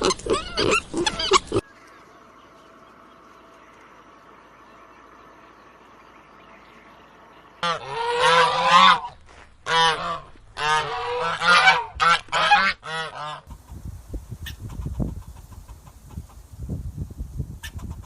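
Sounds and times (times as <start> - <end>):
farm fowl harsh calls: 7.6 - 16.4.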